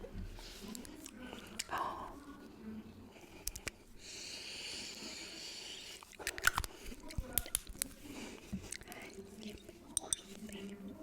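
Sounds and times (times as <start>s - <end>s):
sharp clicks and taps: 6.3s - 8.0s.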